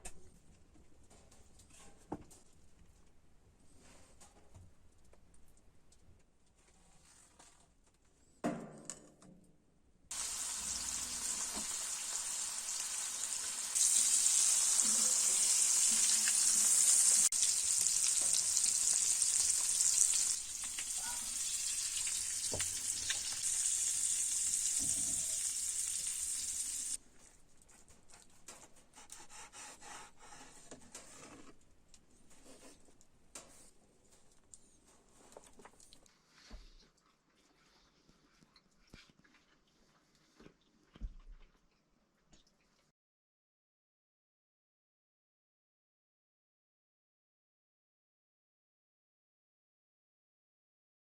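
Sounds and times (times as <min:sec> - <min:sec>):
food frying sizzle: 0:10.1 - 0:27.0.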